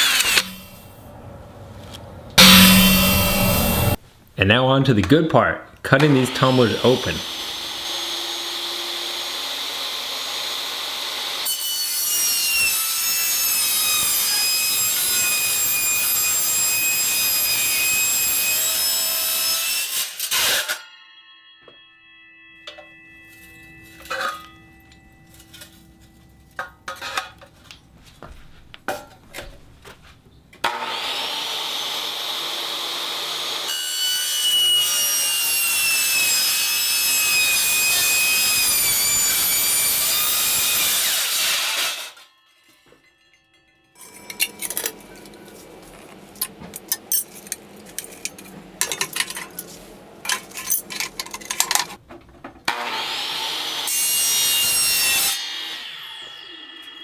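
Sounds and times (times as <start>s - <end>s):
power tool cutting metal: 0.0s - 0.8s, 2.4s - 4.0s, 6.0s - 21.0s, 30.6s - 42.5s, 44.0s - 49.7s, 52.7s - 57.0s
power tool whining: 6.0s - 11.4s
tumbler scraping and clicking: 44.0s - 52.0s.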